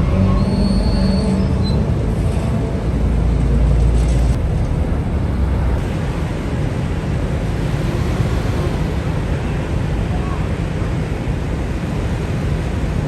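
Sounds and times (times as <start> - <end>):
ferry engine rumbling: 0.0 - 13.0
wind: 0.0 - 13.0
water noise: 5.8 - 13.0.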